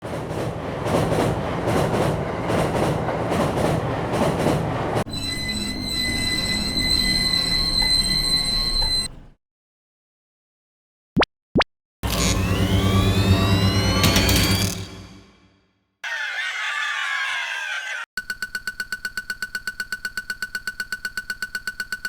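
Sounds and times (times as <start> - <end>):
train wheel clatter: 0.0 - 5.1
wheels and brakes squealing: 5.0 - 9.4, 16.0 - 18.1.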